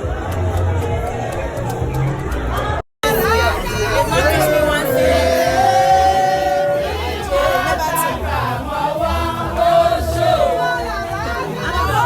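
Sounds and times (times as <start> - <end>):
steady low beat: 0.0 - 12.0
voices singing in harmony: 2.6 - 12.0.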